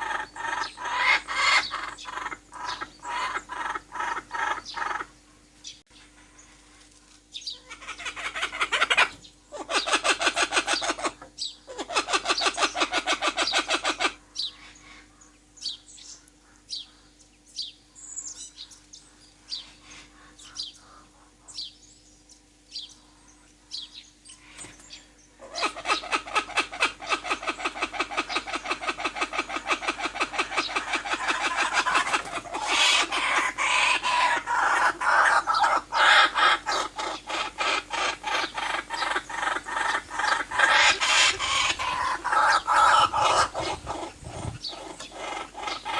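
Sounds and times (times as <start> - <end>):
birds chattering trill: 0.0 - 45.9.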